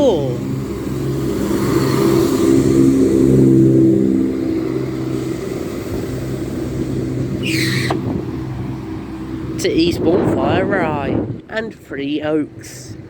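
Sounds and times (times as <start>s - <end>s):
train diesel engines droning: 0.0s - 11.0s.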